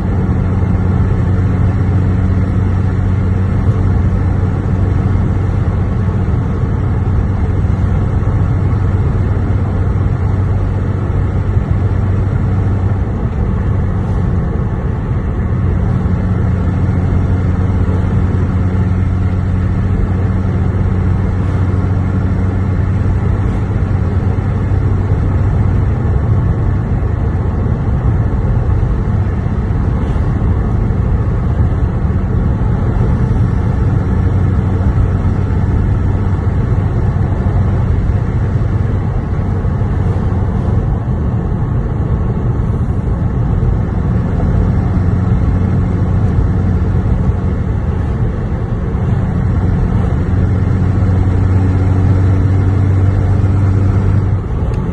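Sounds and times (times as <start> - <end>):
car engine drone: 0.0 - 54.9
road noise: 0.0 - 54.9.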